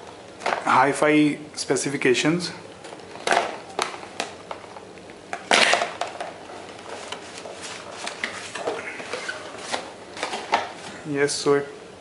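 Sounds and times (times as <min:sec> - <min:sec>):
packaging being handled: 0:02.7 - 0:11.1.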